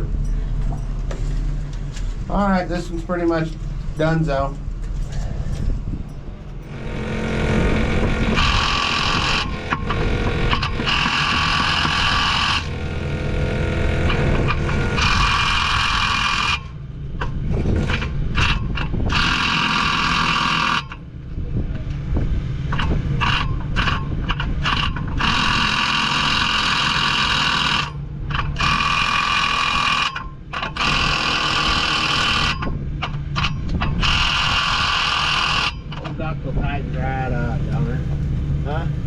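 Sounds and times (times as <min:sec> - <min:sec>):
low engine rumble: 0:00.0 - 0:10.9, 0:21.0 - 0:25.2, 0:35.8 - 0:39.0
high-pitched machine whine: 0:00.0 - 0:21.1, 0:22.7 - 0:39.0.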